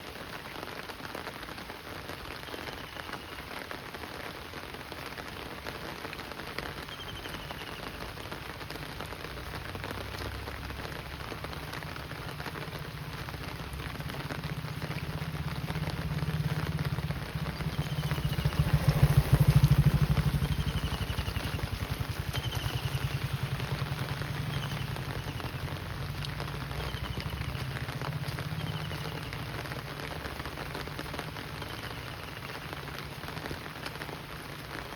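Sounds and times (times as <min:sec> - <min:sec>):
steady rain falling: 0:00.0 - 0:34.9
faint high chirps: 0:06.8 - 0:08.0
vehicle passing: 0:12.7 - 0:32.1.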